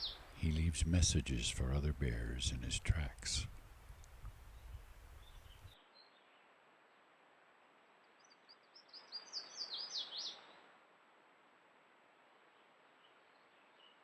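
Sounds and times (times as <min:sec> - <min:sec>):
songbird singing: 0:00.0 - 0:06.5, 0:08.1 - 0:10.6
faint outdoor hiss: 0:00.0 - 0:14.0.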